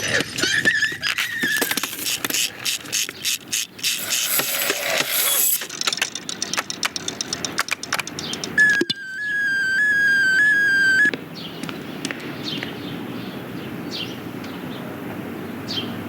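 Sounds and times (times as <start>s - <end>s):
small toys clattering: 0.0s - 8.6s.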